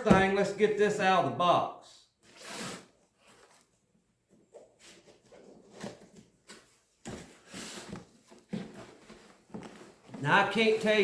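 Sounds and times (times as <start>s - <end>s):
cardboard box and packaging rustling: 4.6s - 11.0s.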